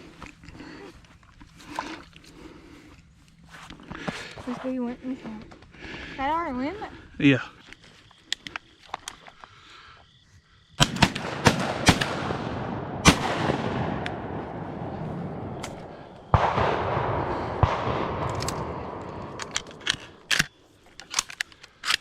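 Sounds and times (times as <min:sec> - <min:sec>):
rumbling echo: 0:10.8 - 0:20.3
shotgun shots: 0:10.8 - 0:20.5.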